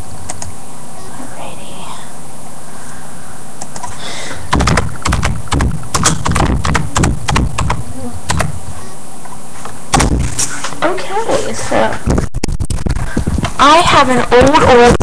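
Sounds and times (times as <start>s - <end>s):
buzzing hum: 0.0s - 15.0s
objects knocking and clicking: 4.5s - 8.5s.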